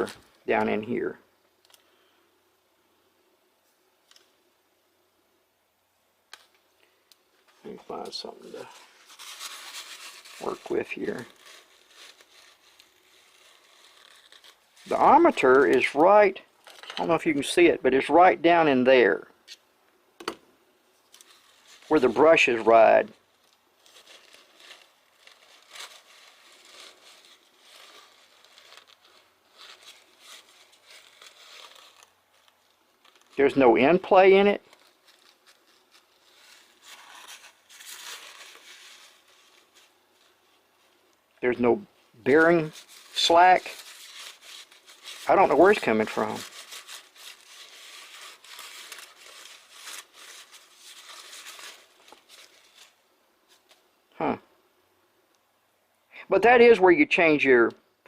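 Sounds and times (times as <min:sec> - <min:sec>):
faint rustling and scraping: 0:06.8 - 0:17.4, 0:20.8 - 0:53.9.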